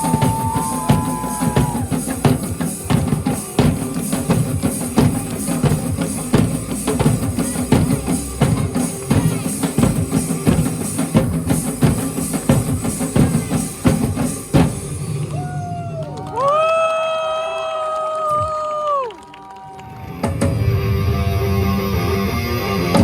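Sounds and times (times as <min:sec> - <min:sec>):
drum ensemble playing fast beat: 0:00.0 - 0:15.3.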